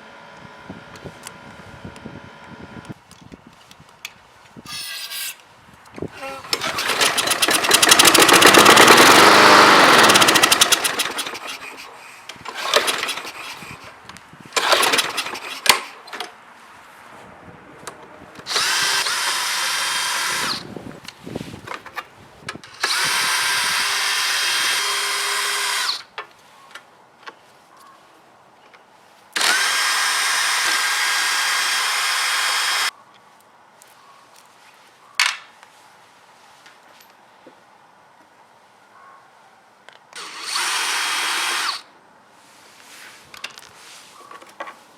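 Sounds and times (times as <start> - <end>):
lawnmower engine sputtering: 6.2 - 11.8, 12.4 - 13.6, 14.6 - 15.9
power drill running: 6.4 - 11.7, 12.5 - 13.5, 14.6 - 15.3, 18.5 - 20.6, 22.8 - 26.1, 29.4 - 32.9, 40.2 - 41.9.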